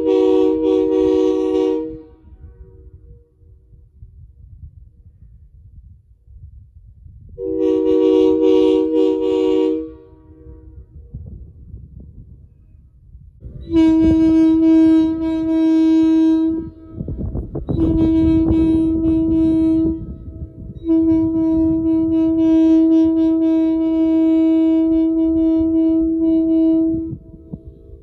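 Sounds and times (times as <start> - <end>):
air horn blasts: 0.0 - 3.5, 7.4 - 10.8, 13.5 - 28.0.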